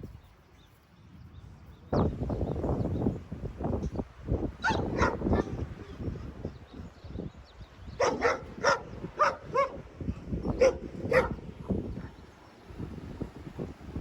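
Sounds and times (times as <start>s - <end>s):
wind rumbling on microphone: 0.0s - 14.0s
dog barking: 4.6s - 5.6s, 8.0s - 9.9s, 10.5s - 12.2s.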